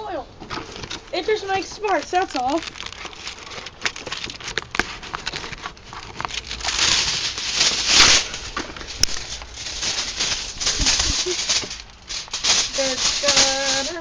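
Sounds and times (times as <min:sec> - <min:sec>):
foil arcing in microwave: 0:06.4 - 0:14.0.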